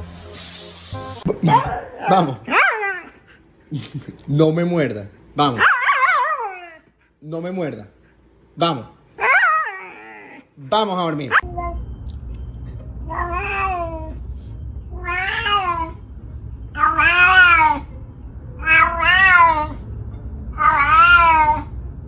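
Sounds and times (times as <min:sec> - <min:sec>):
cat meowing: 0:13.1 - 0:14.2, 0:14.9 - 0:16.0, 0:16.8 - 0:17.9, 0:18.6 - 0:19.8, 0:20.5 - 0:21.7.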